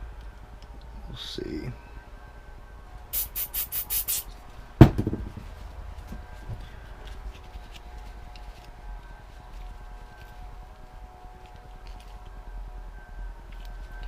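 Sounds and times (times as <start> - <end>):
quick rubbing strokes: 3.2 - 4.3
sharp knock: 4.8 - 5.4.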